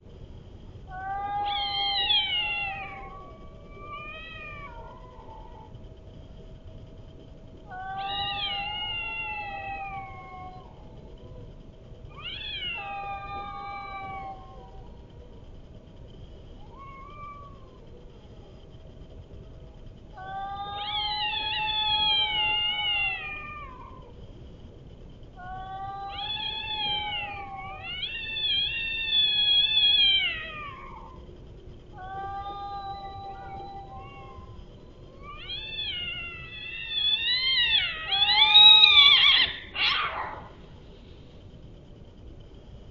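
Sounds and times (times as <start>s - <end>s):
cat yowling: 0.9s - 5.7s, 7.7s - 11.4s, 12.1s - 15.1s, 20.2s - 24.1s, 25.4s - 31.3s, 31.9s - 40.6s.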